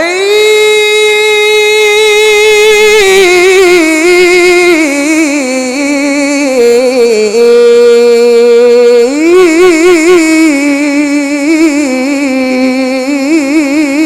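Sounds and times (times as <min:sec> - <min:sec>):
person reciting melodically: 0:00.0 - 0:14.0.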